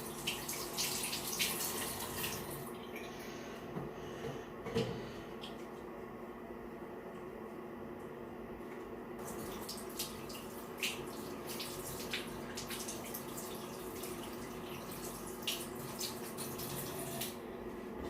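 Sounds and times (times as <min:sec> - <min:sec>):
tap water running onto hands: 0:09.2 - 0:17.4.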